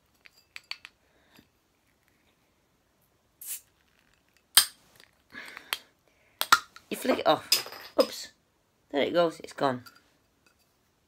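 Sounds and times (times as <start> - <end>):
short hiss: 3.4 - 3.8
bottle cap sharp crack: 4.6 - 4.8.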